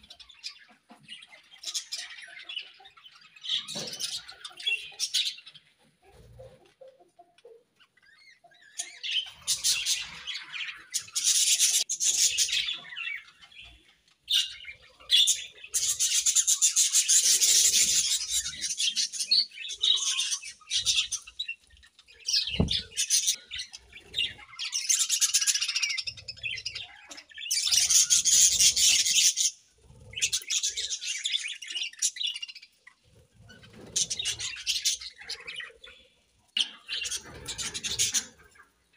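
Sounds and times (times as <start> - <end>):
budgerigars chirping: 8.1 - 32.8, 33.5 - 38.7.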